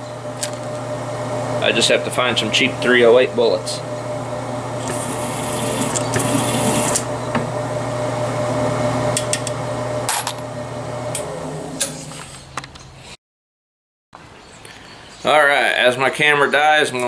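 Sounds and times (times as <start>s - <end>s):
small electric motor humming: 0.0s - 12.6s.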